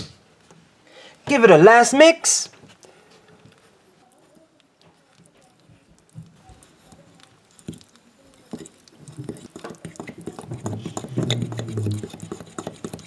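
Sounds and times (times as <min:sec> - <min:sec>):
spoon stirring batter in bowl: 0:02.7 - 0:13.0.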